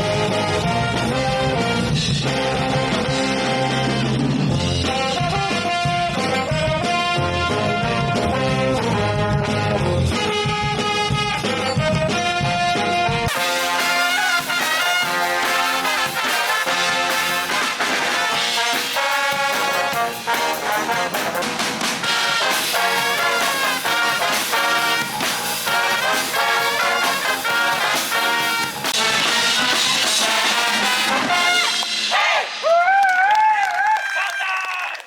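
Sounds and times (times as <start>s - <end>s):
marching band brass tune: 0.0s - 32.9s
steady drumbeat: 13.3s - 33.0s.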